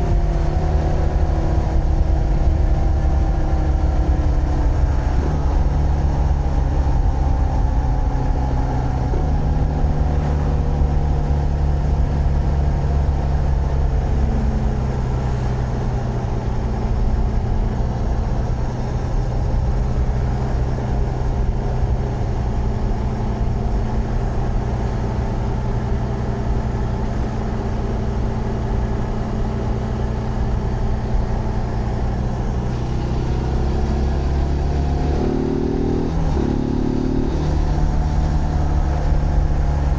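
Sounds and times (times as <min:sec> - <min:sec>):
motorcycle engine cruising: 0:00.0 - 0:39.9
wind and road rumble: 0:00.0 - 0:39.9.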